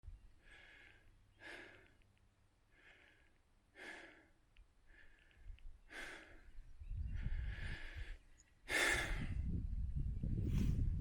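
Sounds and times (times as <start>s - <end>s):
person breathing heavily: 0.4s - 2.0s, 2.7s - 9.5s.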